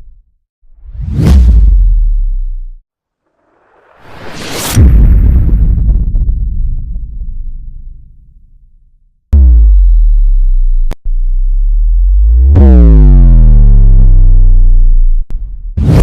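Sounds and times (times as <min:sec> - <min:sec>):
rumble: 0:00.0 - 0:16.0
deep electronic tone sweeping down: 0:09.3 - 0:16.0.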